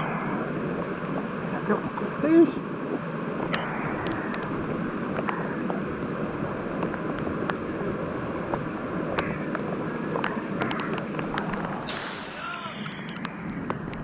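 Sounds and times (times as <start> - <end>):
creek water flowing: 0.0 - 14.0
raindrops ticking on camera: 1.1 - 14.0.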